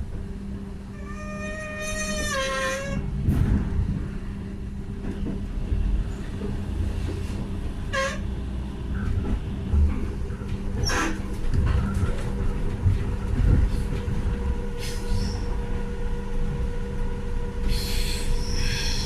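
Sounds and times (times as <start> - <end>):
train rumble: 0.0 - 19.0
train wheels squealing: 1.0 - 3.0, 14.8 - 15.5, 17.6 - 19.0.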